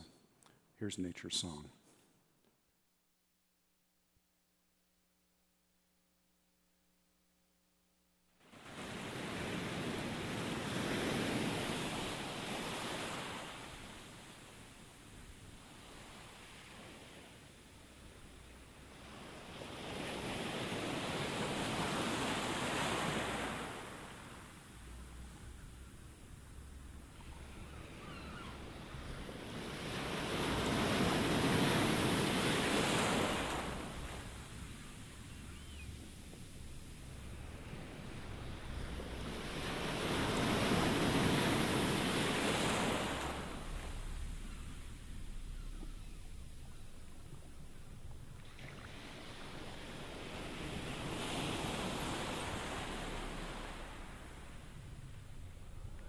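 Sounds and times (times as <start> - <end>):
ocean wave washing in: 26.2 - 56.0.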